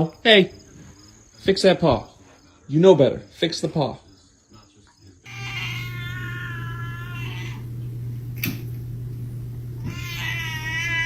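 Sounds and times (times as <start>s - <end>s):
cat meowing: 5.3s - 7.8s, 9.8s - 11.0s
steady low hum: 5.3s - 10.2s
sharp click: 8.4s - 8.7s.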